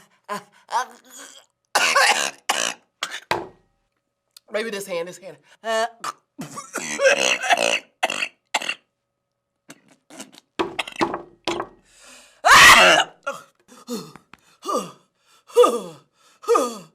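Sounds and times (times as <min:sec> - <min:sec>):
woman retching cough: 0:01.2 - 0:03.3, 0:06.0 - 0:08.9
woman coughing and gagging: 0:01.8 - 0:03.3, 0:06.0 - 0:08.9.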